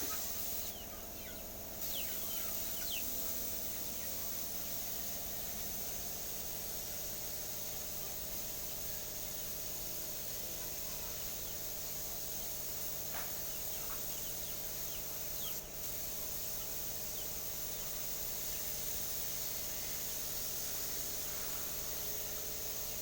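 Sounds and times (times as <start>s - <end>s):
faint bird chirps: 0.0s - 4.2s
low hum with hiss: 0.0s - 23.0s.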